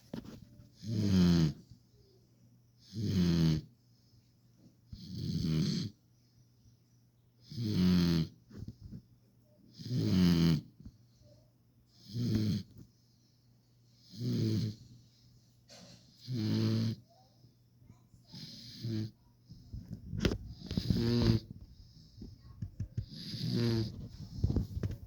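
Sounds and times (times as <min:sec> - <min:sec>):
puppy snoring: 0:00.7 - 0:01.7, 0:02.8 - 0:03.8, 0:04.9 - 0:06.0, 0:07.4 - 0:09.0, 0:09.7 - 0:12.9, 0:14.0 - 0:15.0, 0:15.7 - 0:17.2, 0:18.2 - 0:25.0.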